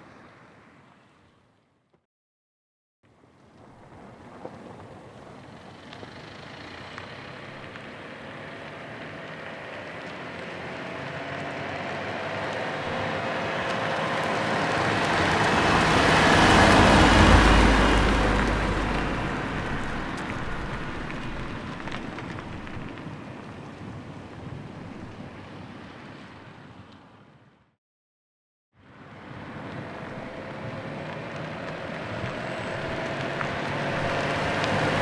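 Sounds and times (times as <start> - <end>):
car driving past slowly: 3.6 - 23.1, 28.8 - 35.0.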